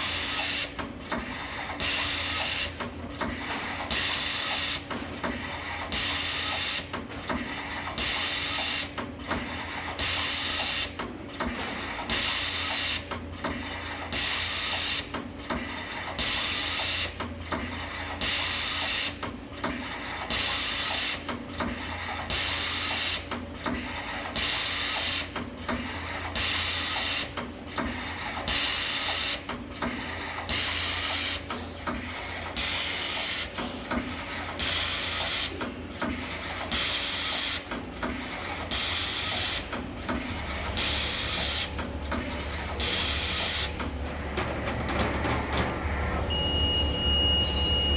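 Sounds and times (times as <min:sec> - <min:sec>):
low machine hum: 0:38.4 - 0:47.9.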